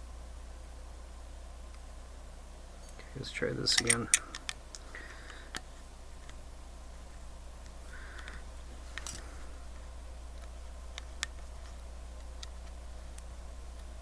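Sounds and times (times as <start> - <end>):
small metal clicks: 2.8 - 6.4, 8.1 - 9.4.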